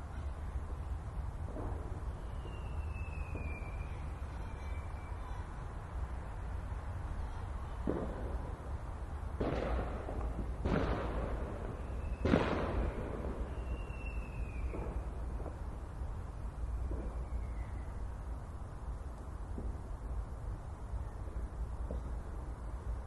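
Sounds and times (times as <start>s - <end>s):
fireworks exploding: 1.4s - 5.3s, 7.8s - 22.9s
high whistle gliding downward: 2.2s - 5.2s, 13.4s - 15.0s, 16.7s - 18.0s.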